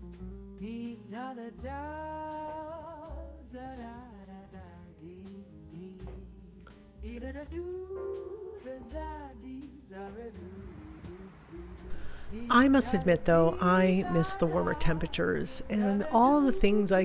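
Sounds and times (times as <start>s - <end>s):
song with hummed melody and beat: 0.0s - 17.0s.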